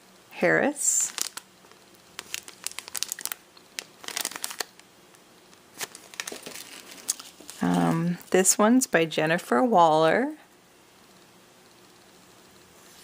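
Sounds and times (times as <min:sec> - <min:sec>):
paper crinkling and rustling: 0:01.0 - 0:01.4, 0:02.2 - 0:04.8, 0:05.7 - 0:08.3.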